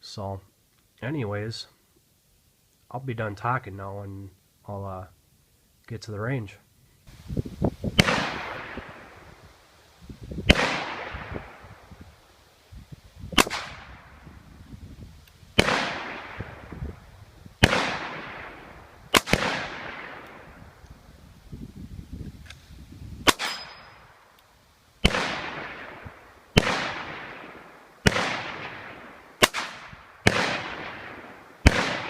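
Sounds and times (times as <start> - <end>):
revolver gunshots with echo: 8.0 - 9.4, 10.5 - 11.8, 13.4 - 14.2, 15.6 - 17.0, 17.6 - 20.8, 23.2 - 24.2, 25.0 - 32.0.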